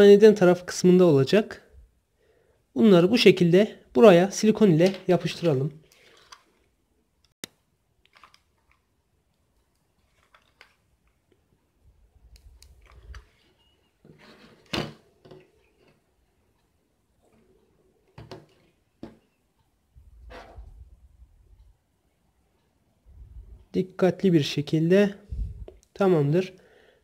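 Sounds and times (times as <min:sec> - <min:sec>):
rustling scrape: 0:12.8 - 0:14.7, 0:20.2 - 0:20.9.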